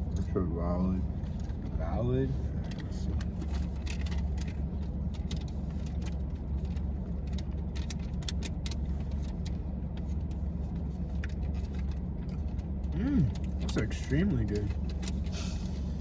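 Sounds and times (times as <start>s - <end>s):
low rumble of car interior: 0.0s - 16.0s.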